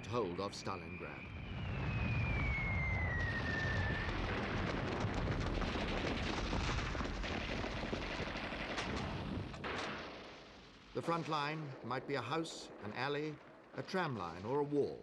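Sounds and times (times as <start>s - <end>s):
falling bomb whistle: 0.7s - 4.4s
explosions rumbling: 1.1s - 15.0s
crackling gunfire: 1.4s - 15.0s.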